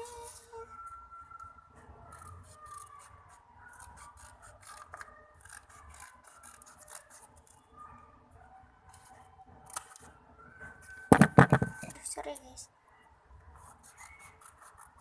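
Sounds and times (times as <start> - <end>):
scissors snipping paper: 2.1 - 7.6.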